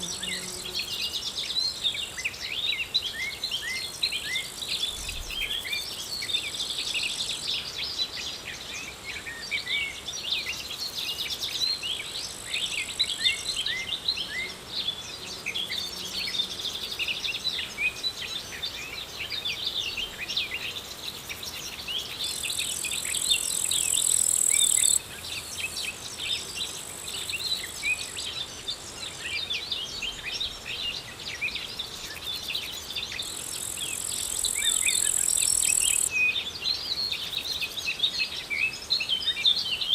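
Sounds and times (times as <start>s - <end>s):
insect trills: 0.0s - 7.6s, 15.6s - 29.2s, 31.7s - 36.2s
small birds chirping: 0.0s - 39.9s.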